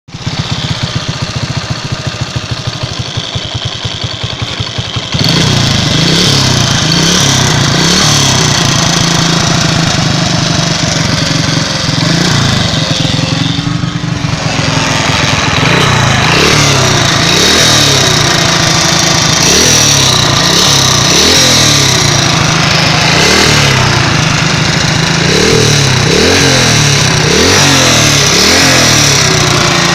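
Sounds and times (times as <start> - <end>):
engine knock: 0.1 - 29.9
small engine revving: 0.2 - 29.9.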